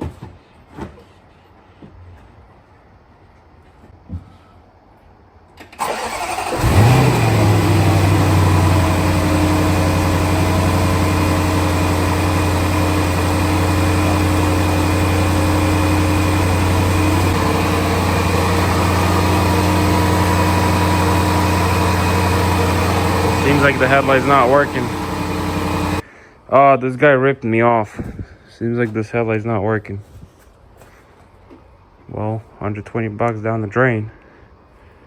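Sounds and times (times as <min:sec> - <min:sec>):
car engine starting and idling: 0:05.7 - 0:26.0.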